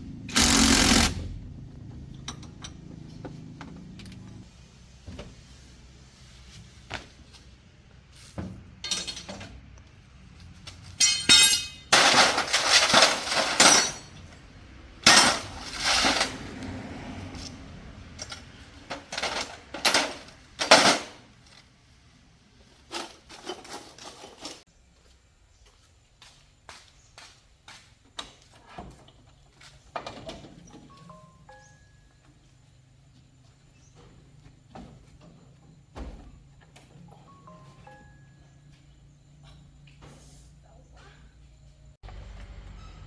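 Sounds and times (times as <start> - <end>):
metal tools clinking and clattering: 8.8 - 9.6, 10.8 - 14.4, 15.0 - 16.4, 17.2 - 21.2, 22.8 - 24.6.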